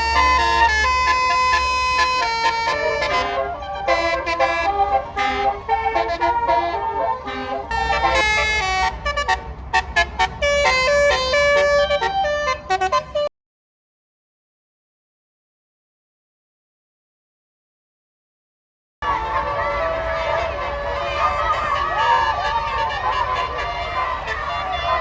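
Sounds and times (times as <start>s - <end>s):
bus engine rumbling: 0.0s - 13.3s, 19.0s - 25.0s
musical air horn tune: 0.0s - 13.3s, 19.0s - 25.0s.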